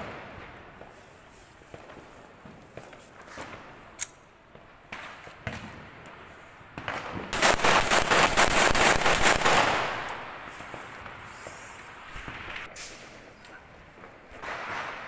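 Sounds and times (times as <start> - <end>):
rapid volley of cracks: 6.8 - 15.0.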